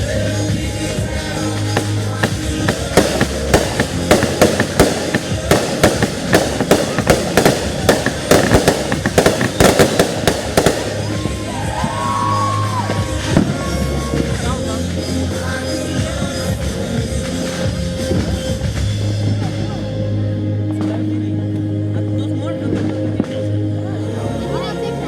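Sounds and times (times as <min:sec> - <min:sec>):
music playing: 0:00.0 - 0:25.0
fireworks bangs and crackles: 0:01.6 - 0:12.0, 0:12.8 - 0:14.6.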